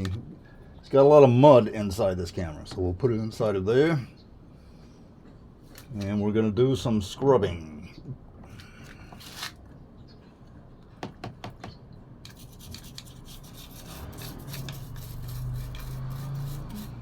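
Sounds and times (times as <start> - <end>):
scratchy scrubbing in water: 12.3 - 17.0.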